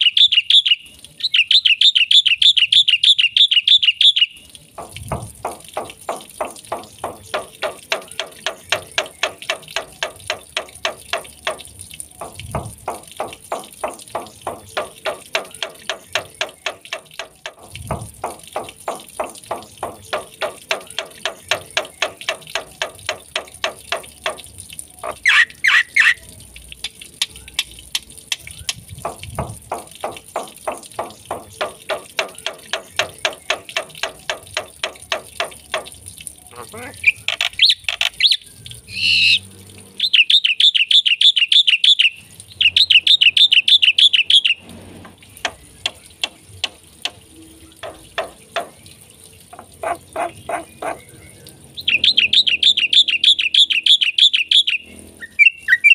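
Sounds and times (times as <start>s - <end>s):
starling calling: 36.5s - 39.4s, 49.8s - 51.2s.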